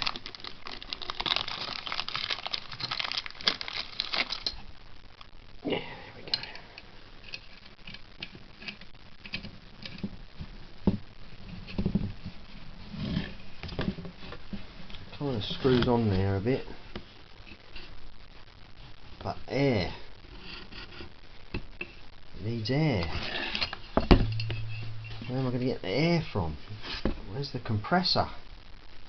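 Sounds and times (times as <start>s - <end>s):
plastic packaging crinkling: 0.0s - 4.6s.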